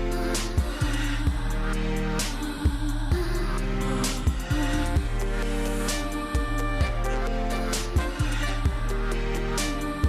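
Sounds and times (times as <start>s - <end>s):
low drum beat: 0.0s - 7.2s, 7.8s - 10.0s.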